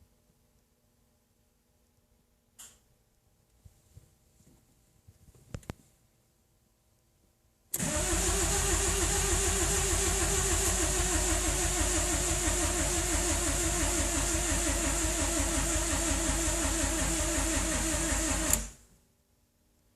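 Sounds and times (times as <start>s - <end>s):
starter motor cranking engine: 7.8s - 18.8s.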